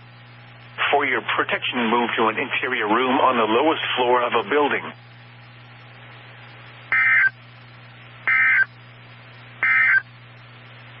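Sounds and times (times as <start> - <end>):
low hum and hiss: 0.0 - 11.0
high-pitched data tone bursts: 6.9 - 7.4, 8.3 - 8.7, 9.6 - 10.0.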